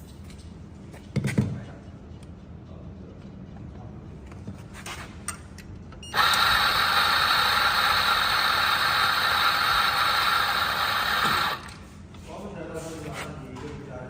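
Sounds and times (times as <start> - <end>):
electric coffee grinder running: 6.2 - 11.7.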